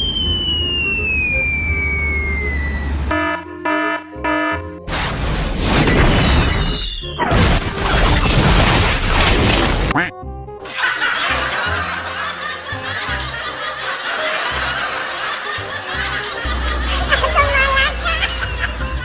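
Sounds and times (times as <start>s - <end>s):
falling whistle-like glide: 0.0s - 3.1s
background music: 3.1s - 4.9s, 10.0s - 19.0s.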